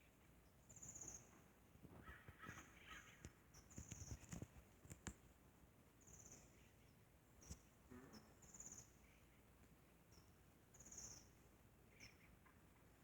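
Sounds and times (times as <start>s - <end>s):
small birds chirping and trilling: 2.0s - 4.4s, 6.0s - 13.0s.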